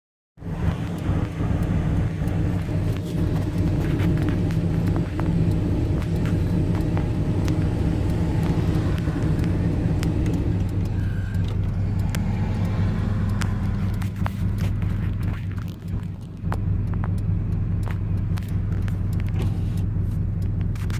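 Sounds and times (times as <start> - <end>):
car engine running in cabin: 0.4 - 20.9
engine knock: 0.4 - 20.9.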